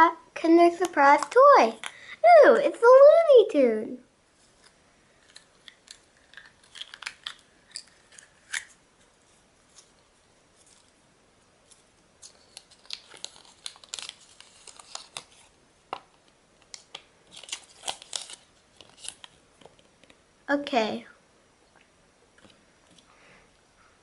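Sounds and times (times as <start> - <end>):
wrapping crinkling and tearing: 4.4 - 11.0, 11.6 - 15.6, 16.6 - 20.2.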